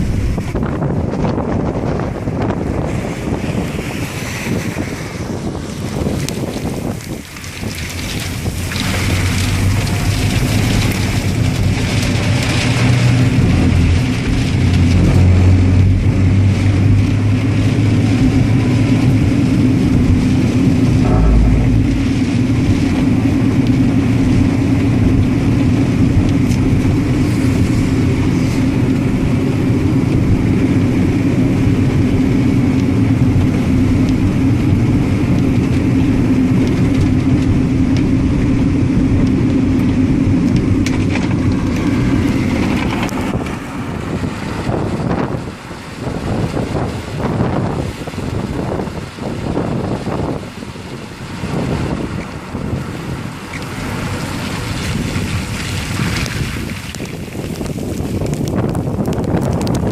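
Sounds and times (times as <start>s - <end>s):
car engine and road noise: 0.0s - 59.9s.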